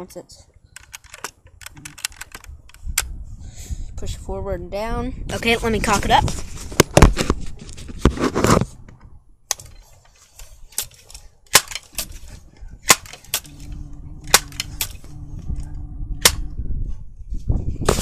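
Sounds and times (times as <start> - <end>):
pellet rifle cocking clicks: 0.8 - 3.1, 12.9 - 13.6, 14.3 - 15.0.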